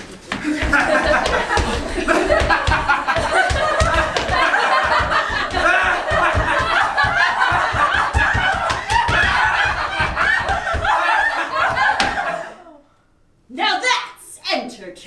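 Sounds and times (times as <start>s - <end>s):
people laughing and giggling: 0.2s - 12.8s.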